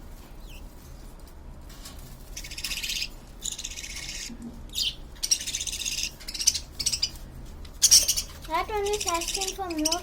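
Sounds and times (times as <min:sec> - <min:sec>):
baby birds begging calls: 0:02.4 - 0:10.0.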